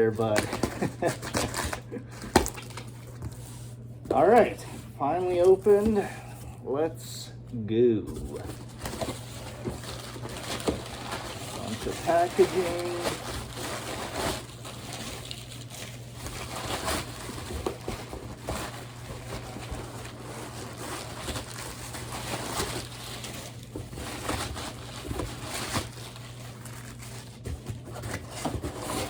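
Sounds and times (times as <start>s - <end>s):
steady low hum: 0.0s - 29.0s
packing material rustling and crinkling: 8.1s - 29.0s.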